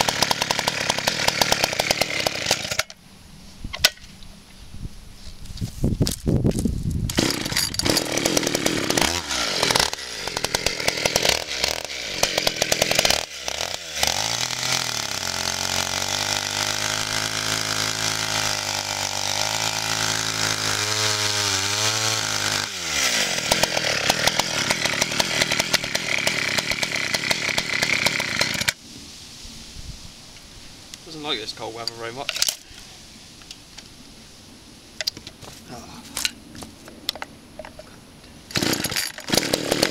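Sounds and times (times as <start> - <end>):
chainsaw revving and idling: 0.0 - 3.0, 7.1 - 28.8, 38.5 - 39.9.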